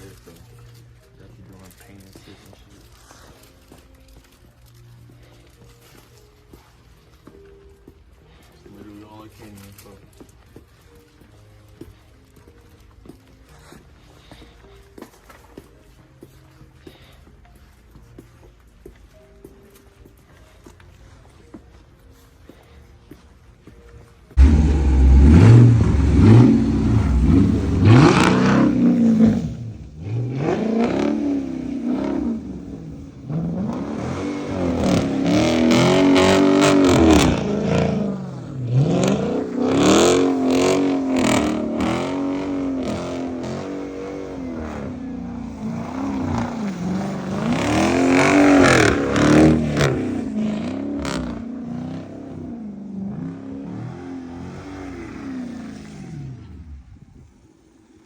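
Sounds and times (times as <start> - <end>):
car engine revving: 24.4 - 57.0.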